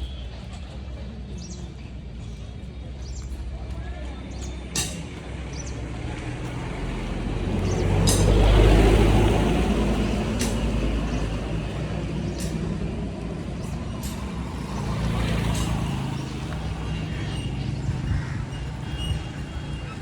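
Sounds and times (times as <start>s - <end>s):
low engine hum: 0.0s - 20.0s
motor vehicle passing by: 5.3s - 20.0s.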